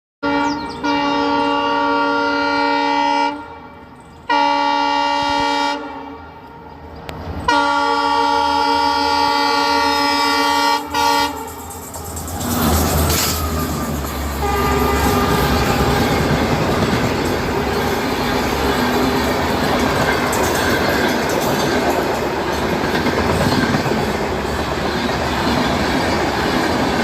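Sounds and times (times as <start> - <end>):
train horn blasts: 0.2 - 11.9, 13.1 - 19.3
low train rumble: 0.2 - 27.0.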